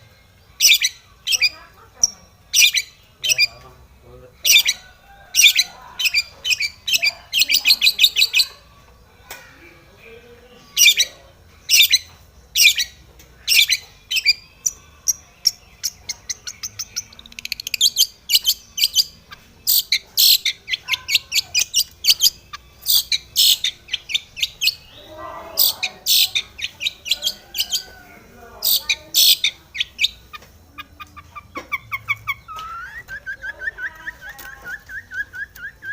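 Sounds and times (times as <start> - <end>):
shrike singing harsh chattering notes: 11.7 - 33.0.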